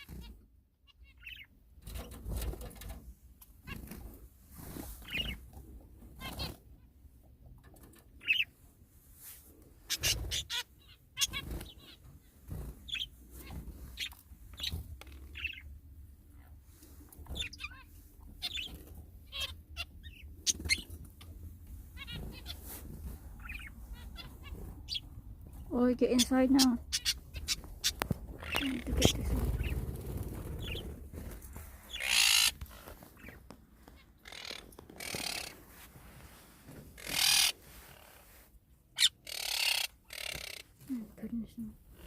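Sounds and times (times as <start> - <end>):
birds chirping and squawking: 0.0 - 3.0, 3.6 - 7.0, 7.7 - 8.7, 9.7 - 35.8, 36.7 - 38.1, 38.9 - 40.9
wing flutters: 26.9 - 33.3.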